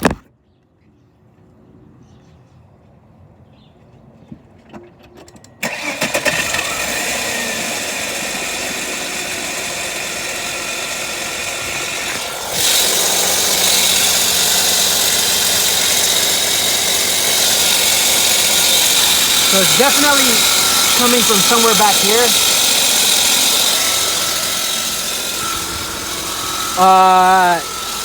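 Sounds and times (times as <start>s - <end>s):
engine cranking and catching: 4.7s - 28.0s
high-pitched engine screech: 5.6s - 11.0s, 11.6s - 28.0s
engine idling: 5.6s - 28.0s.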